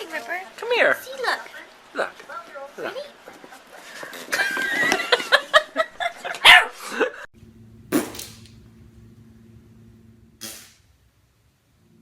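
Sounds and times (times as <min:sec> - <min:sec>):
dog barking: 0:06.4 - 0:06.8
low steady hum: 0:07.4 - 0:12.0.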